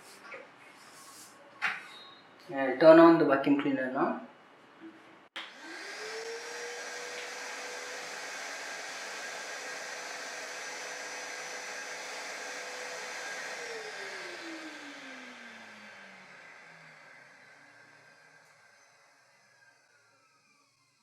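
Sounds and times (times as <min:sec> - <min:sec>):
vacuum cleaner motor whining: 0:05.4 - 0:21.0.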